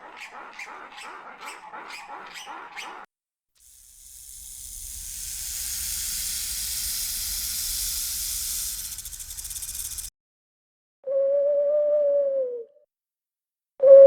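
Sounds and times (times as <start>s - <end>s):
high-pitched animal hiss: 3.6s - 10.1s.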